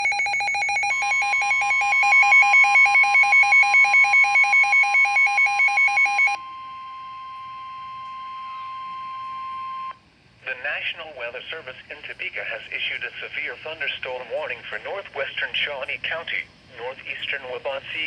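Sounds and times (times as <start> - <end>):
rapidly pulsing electronic beeps: 0.0 - 6.4
steady high electronic tone: 0.0 - 6.6.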